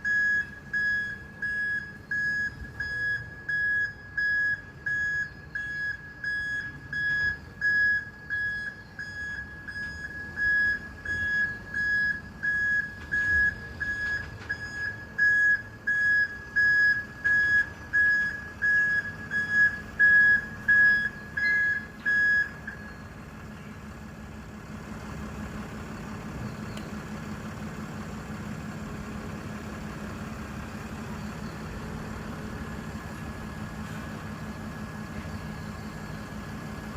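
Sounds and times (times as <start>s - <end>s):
reversing alarm beeping: 0.0s - 23.3s
truck engine running: 0.0s - 36.9s.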